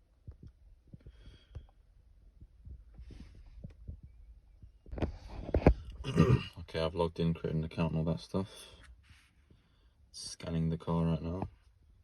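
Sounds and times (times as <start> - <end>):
light taps and low thumps: 0.0 - 6.0
soft rustle: 2.4 - 6.0, 8.6 - 9.9.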